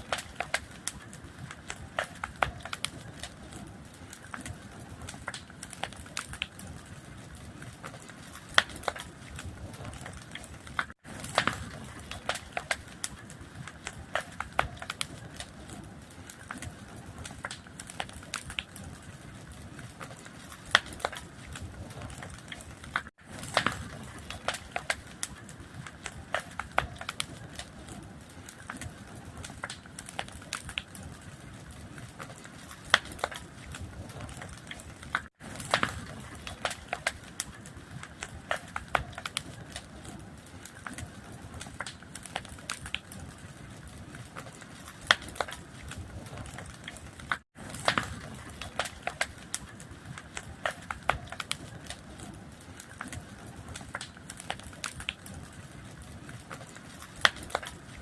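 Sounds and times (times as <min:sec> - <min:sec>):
fire crackling: 0:00.0 - 0:58.0
wood popping and snapping: 0:19.4 - 0:31.0, 0:32.1 - 0:43.2, 0:43.8 - 0:57.9.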